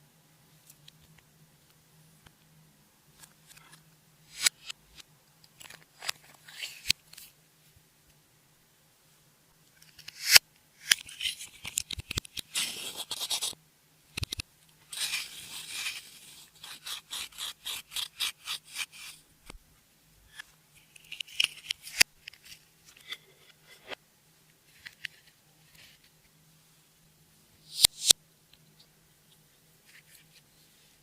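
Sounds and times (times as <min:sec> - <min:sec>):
hands scraping slime: 0:14.9 - 0:19.2.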